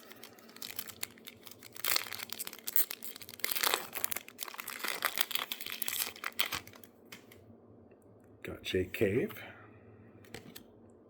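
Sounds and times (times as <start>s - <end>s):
plastic wrapper tearing and crinkling: 0.0s - 6.9s.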